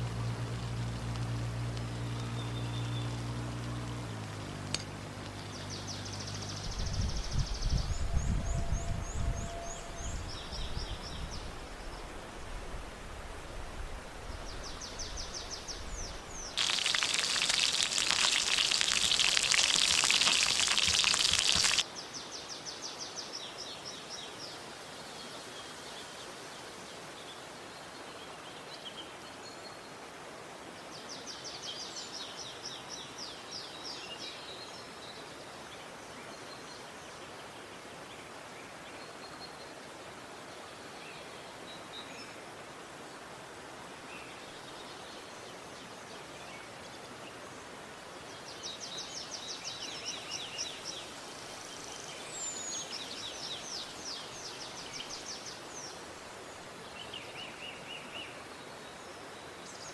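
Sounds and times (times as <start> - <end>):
loud crackling hiss: 0.0 - 7.7, 13.4 - 21.8
steady outdoor hiss: 0.0 - 59.9
bird singing trilled song: 1.9 - 3.3, 4.8 - 11.5.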